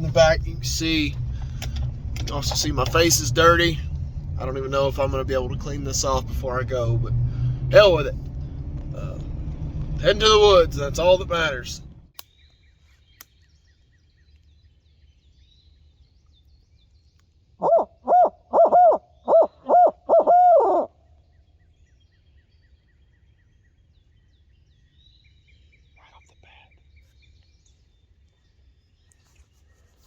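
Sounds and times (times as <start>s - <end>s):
owl hooting: 17.6s - 20.9s.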